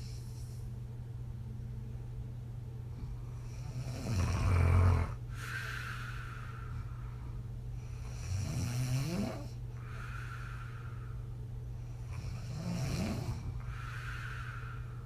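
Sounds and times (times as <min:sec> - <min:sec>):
faint low hum: 0:00.0 - 0:15.0
woman snoring: 0:03.4 - 0:06.8, 0:07.8 - 0:10.8, 0:12.0 - 0:14.8.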